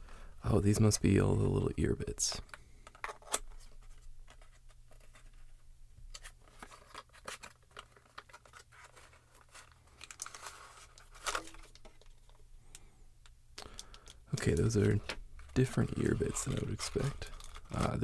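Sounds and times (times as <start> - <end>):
plastic packaging rustling: 0.4 - 12.6, 13.6 - 18.0
packaging crinkle: 6.1 - 12.8, 13.6 - 18.0.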